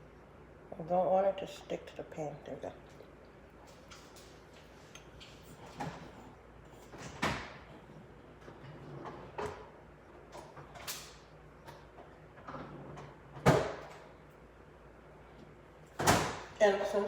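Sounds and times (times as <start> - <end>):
kitchen knocks and clatters: 12.4 - 14.0.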